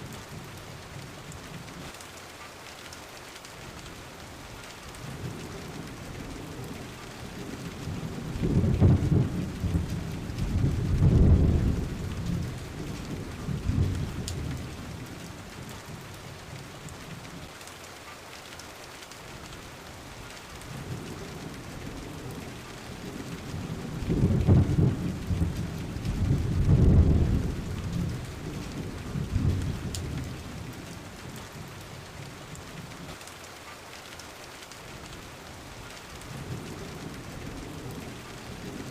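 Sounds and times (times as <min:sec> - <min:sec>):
steady rain: 0:00.0 - 0:38.9
low rolling thunder: 0:05.0 - 0:17.3, 0:20.6 - 0:33.1, 0:36.2 - 0:38.9.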